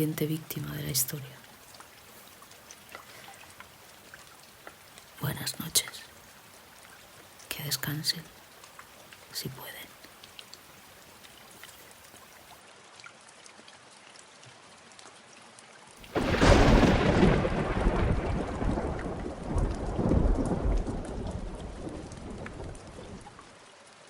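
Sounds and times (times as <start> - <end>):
light rain: 0.0 - 24.0
thunder crack and rumble: 16.1 - 23.3.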